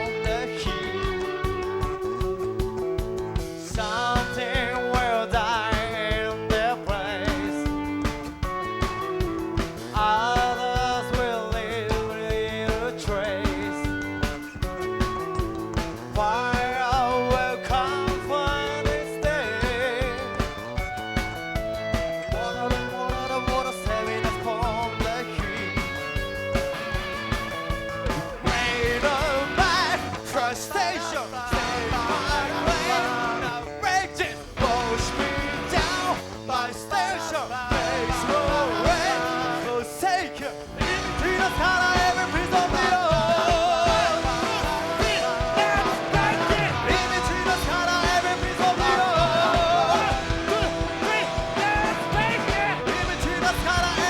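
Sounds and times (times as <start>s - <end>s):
bass: 0.0s - 54.0s
drums: 0.0s - 54.0s
electric guitar: 0.0s - 54.0s.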